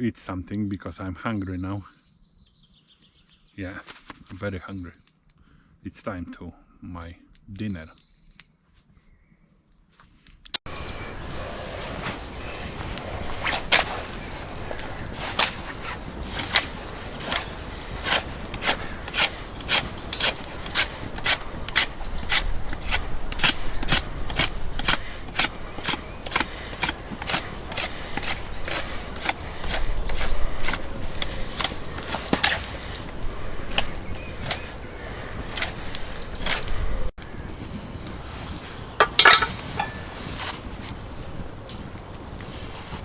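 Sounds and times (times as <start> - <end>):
small birds chirping: 7.9 - 43.0
wooden scraping strokes: 10.6 - 43.0.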